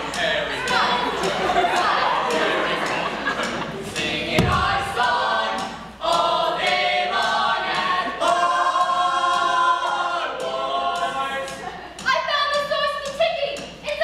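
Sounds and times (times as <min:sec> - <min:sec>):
group singing a cappella: 0:00.0 - 0:12.0
low thump: 0:04.3 - 0:05.2.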